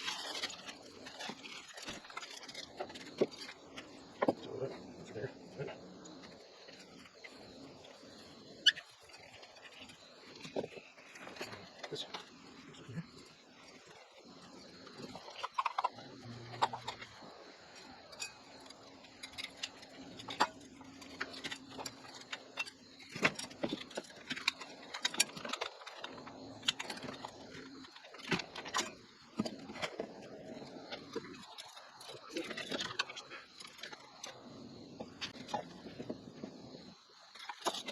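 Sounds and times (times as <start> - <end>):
small clicks and metallic clinks: 8.6 - 36.2.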